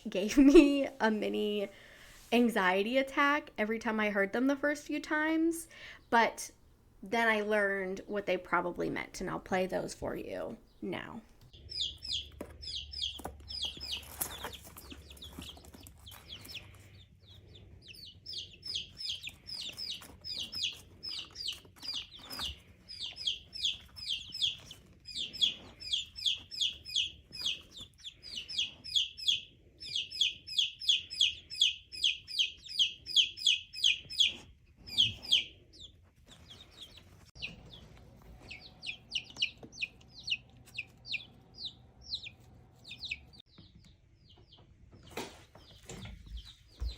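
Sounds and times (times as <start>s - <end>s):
chicks trilling chirps: 11.5s - 46.9s.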